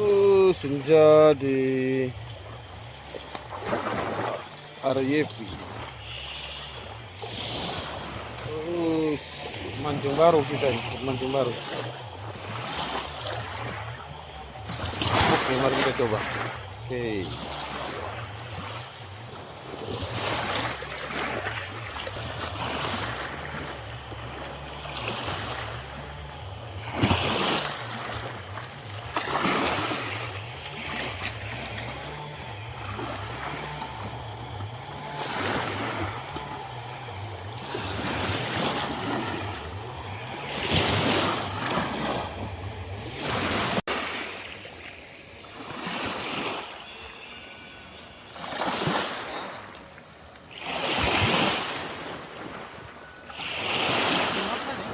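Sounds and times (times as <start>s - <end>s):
small waves washing ashore: 0.0s - 54.9s.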